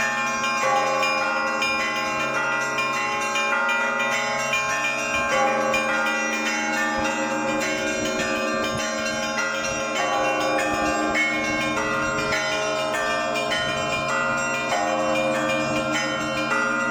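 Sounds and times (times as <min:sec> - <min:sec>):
peal of church bells: 0:00.0 - 0:16.9.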